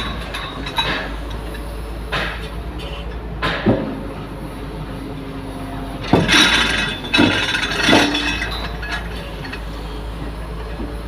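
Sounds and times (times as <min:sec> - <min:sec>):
loud metallic clanks: 0:00.0 - 0:02.6, 0:06.0 - 0:09.7.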